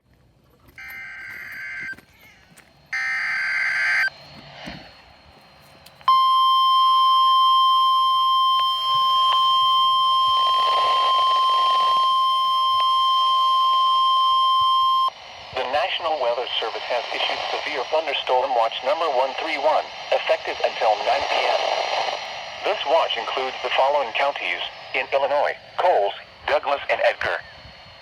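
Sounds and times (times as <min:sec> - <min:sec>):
screeching digital data bursts: 0:00.8 - 0:02.0, 0:02.9 - 0:04.2, 0:06.2 - 0:19.1.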